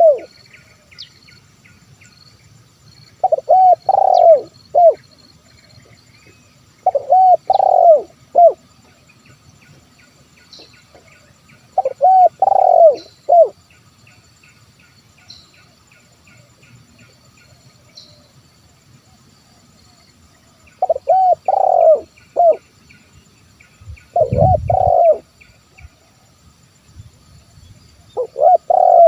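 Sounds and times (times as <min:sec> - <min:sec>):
dove cooing: 0:00.0 - 0:00.4, 0:03.2 - 0:05.0, 0:06.8 - 0:08.6, 0:10.9 - 0:13.6, 0:20.8 - 0:22.6, 0:24.1 - 0:25.3, 0:28.1 - 0:29.0.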